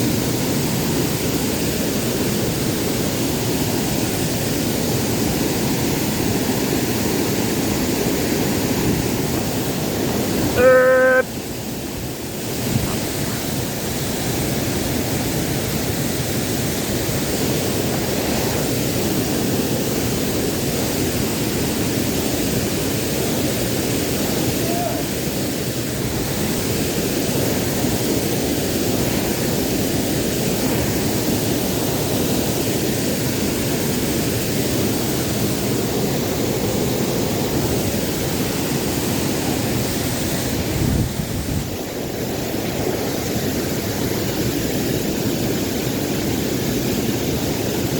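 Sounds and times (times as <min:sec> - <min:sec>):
waterfall rushing: 0:03.6 - 0:11.5, 0:12.2 - 0:33.4
short pitched tone: 0:10.6 - 0:11.3.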